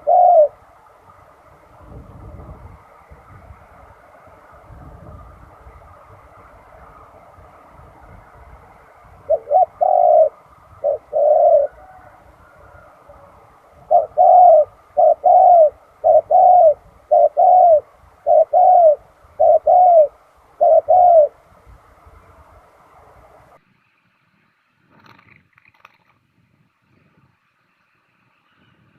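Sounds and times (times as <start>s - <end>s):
dove cooing: 0.0s - 1.1s, 8.8s - 21.4s.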